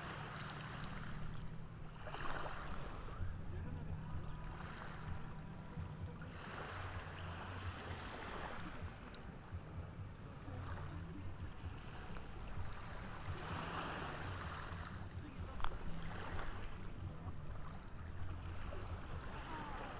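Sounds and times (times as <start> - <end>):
ocean waves washing ashore: 0.0 - 19.9
low rumble: 0.7 - 19.9.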